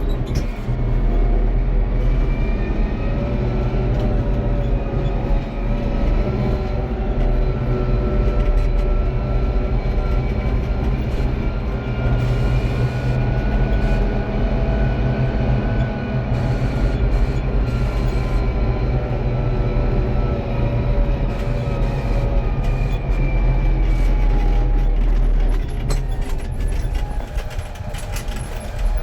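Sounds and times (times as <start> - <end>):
tractor engine rumbling: 0.0 - 29.0
whining tones: 0.0 - 29.0.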